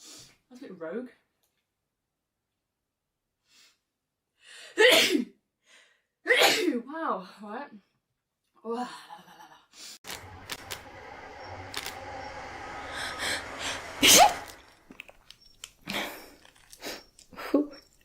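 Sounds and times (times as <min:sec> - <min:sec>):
low hum: 0:10.0 - 0:15.2.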